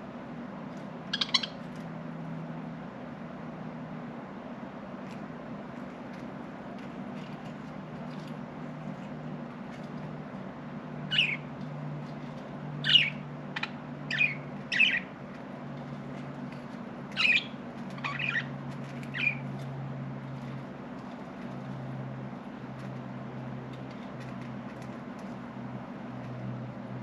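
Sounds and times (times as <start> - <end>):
steady low hum: 0.0 - 27.0
budgerigars chirping: 1.1 - 1.6, 11.1 - 11.5, 12.8 - 15.1, 17.1 - 18.5, 19.1 - 19.5.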